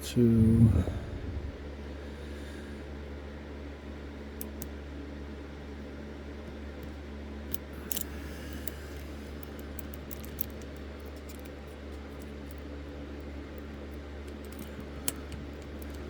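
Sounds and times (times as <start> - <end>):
low hum: 0.0 - 3.4
sharp lock clicks: 7.5 - 8.7
lock pick ticking and scraping: 7.5 - 16.0.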